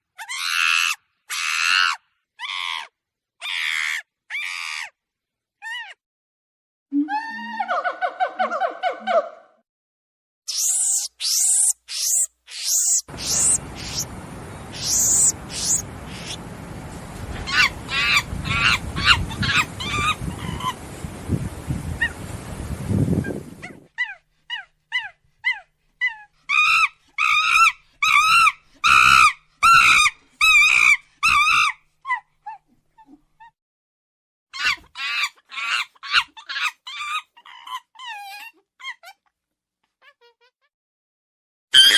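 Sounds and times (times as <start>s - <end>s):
monkeys calling: 10.5s - 22.3s.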